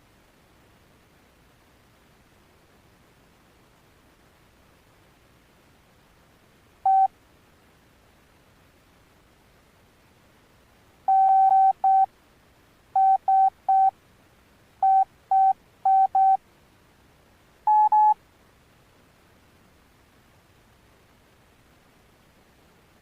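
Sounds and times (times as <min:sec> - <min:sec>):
short electronic phone beeps: 0:06.9 - 0:07.1, 0:11.1 - 0:12.1, 0:13.0 - 0:13.9, 0:14.8 - 0:16.4, 0:17.7 - 0:18.2.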